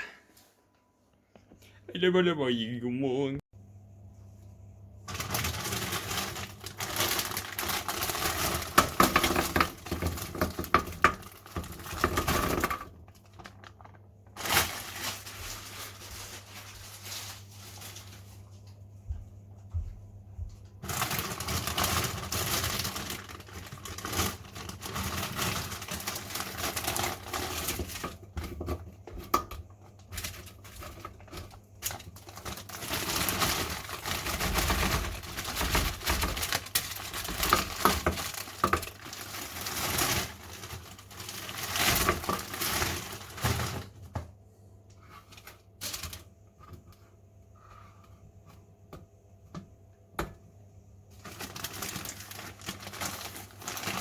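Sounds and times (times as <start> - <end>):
plastic packaging crinkling: 5.0 - 18.9, 20.8 - 44.1, 45.1 - 46.4, 51.1 - 54.0.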